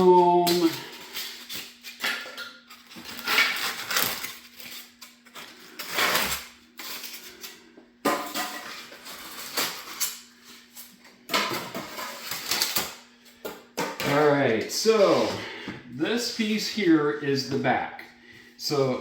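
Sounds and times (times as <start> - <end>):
exhaust fan hum: 0.0 - 2.0, 5.0 - 19.0
styrofoam scraping and rustling: 2.7 - 7.4.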